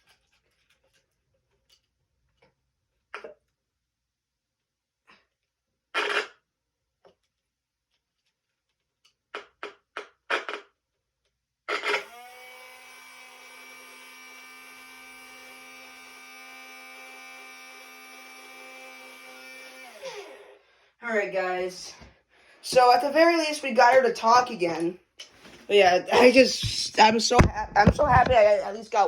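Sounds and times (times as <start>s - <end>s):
small electric motor whining: 11.7s - 20.6s
handling clicks and knocks: 26.6s - 28.6s.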